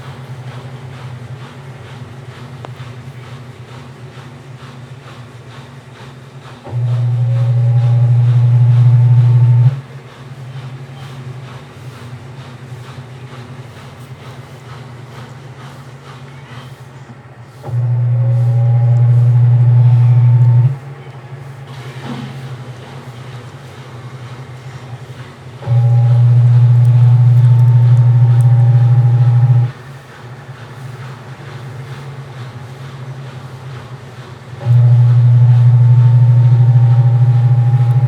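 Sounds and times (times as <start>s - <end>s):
washing machine motor humming: 6.6s - 15.6s, 17.1s - 38.0s.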